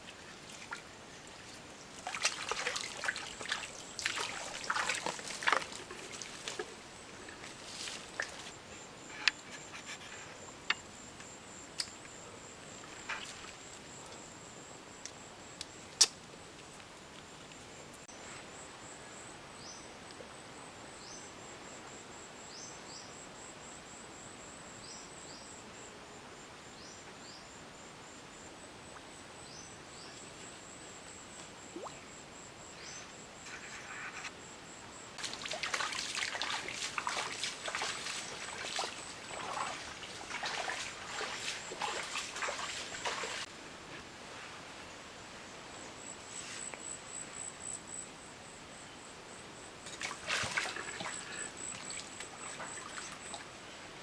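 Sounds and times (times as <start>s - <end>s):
water splashing and trickling: 0.0s - 8.6s, 12.8s - 13.8s, 31.7s - 32.0s, 35.2s - 43.5s, 49.8s - 53.5s
pulsing insect trill: 34.7s - 43.5s.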